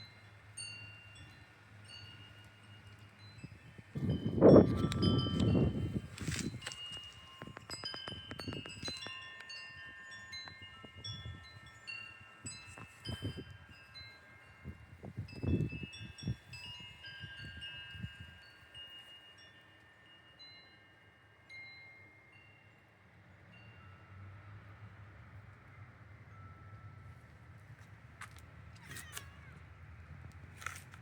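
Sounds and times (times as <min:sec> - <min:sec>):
wind chimes ringing: 0:00.0 - 0:27.5
low wind gusts rumbling: 0:03.4 - 0:09.1, 0:14.6 - 0:18.4.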